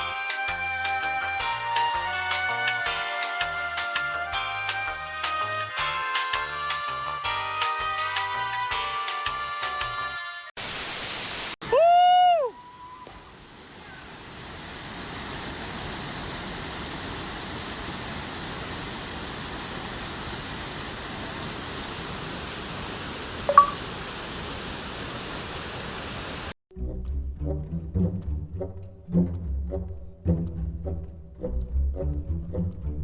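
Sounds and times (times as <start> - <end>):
burst of static: 10.6 - 11.6
steady hiss: 10.6 - 11.6
short electronic blip: 23.5 - 23.8.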